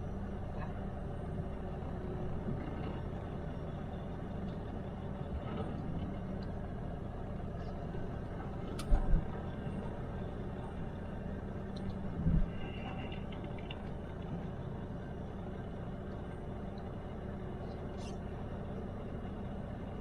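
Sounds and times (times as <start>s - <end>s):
truck engine running: 0.0s - 20.0s.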